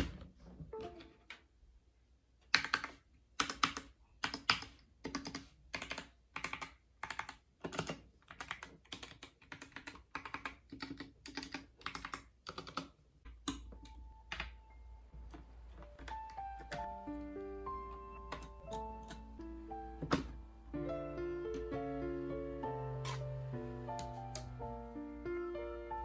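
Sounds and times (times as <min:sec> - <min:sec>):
fast typing on mechanical keyboard: 0:02.5 - 0:13.7
faint music: 0:13.5 - 0:26.0.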